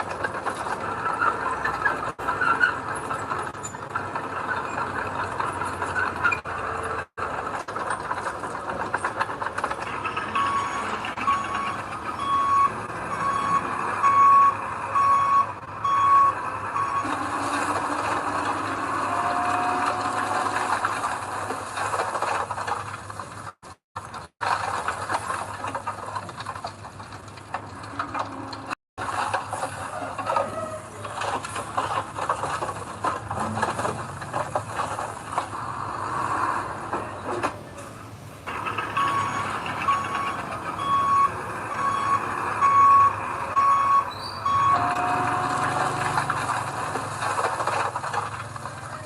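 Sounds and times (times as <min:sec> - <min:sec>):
vehicle backup alarm beeping: 0:10.1 - 0:20.4, 0:38.5 - 0:47.0.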